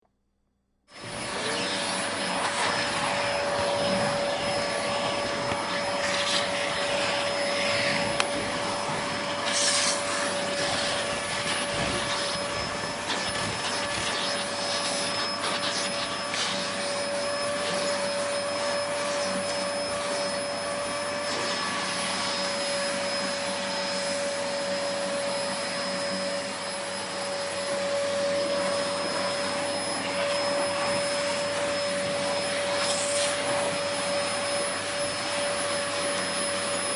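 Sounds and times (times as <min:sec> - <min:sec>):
vacuum cleaner running: 0:00.9 - 0:36.9.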